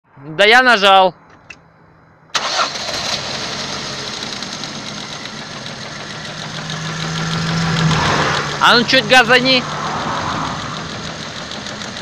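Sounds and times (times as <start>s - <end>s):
car engine idling: 2.3s - 12.0s
faint engine ticking: 3.7s - 9.6s, 10.5s - 12.0s.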